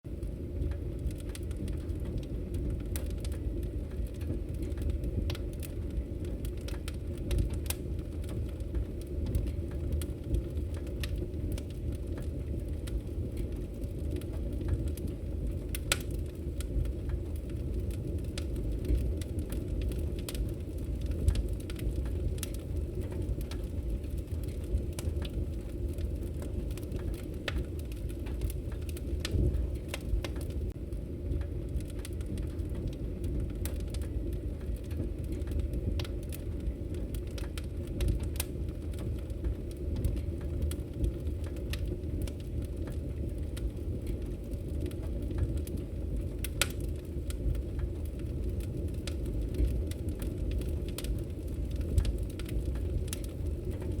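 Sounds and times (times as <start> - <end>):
fire crackling and popping: 0.1 - 54.0
fire rumbling: 0.1 - 54.0.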